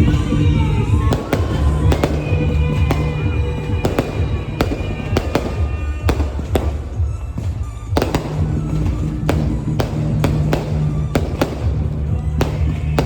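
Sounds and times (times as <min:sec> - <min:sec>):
fireworks bursting with sharp bangs: 0:00.0 - 0:13.0
loud music with heavy bass: 0:00.0 - 0:13.0.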